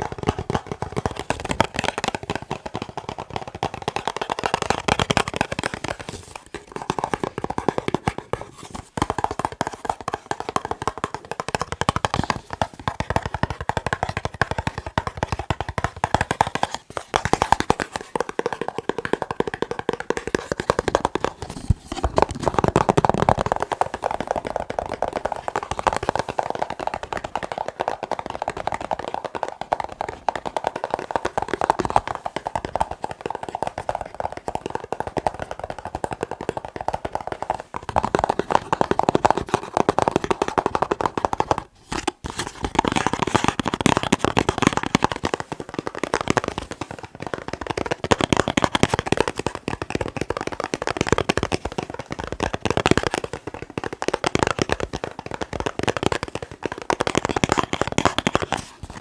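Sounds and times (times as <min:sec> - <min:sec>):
fingers tapping on box: 0:00.0 - 0:59.0.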